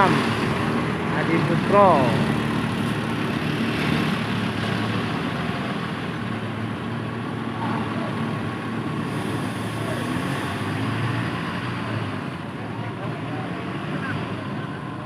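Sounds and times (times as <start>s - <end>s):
people talking: 0.0s - 0.3s, 1.1s - 2.3s, 7.6s - 8.2s
diesel bus engine running: 0.0s - 15.0s.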